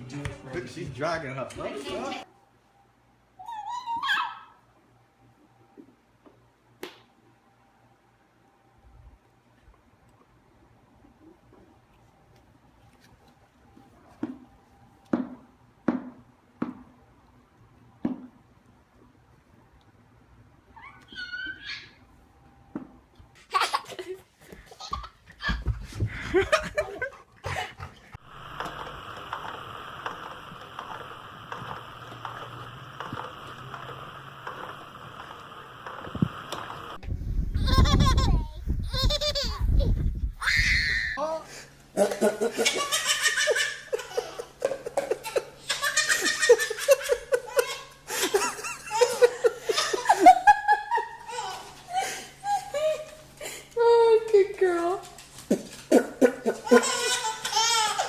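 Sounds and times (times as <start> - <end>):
hearty laughter: 26.0 - 28.0
steady hiss: 28.2 - 37.6.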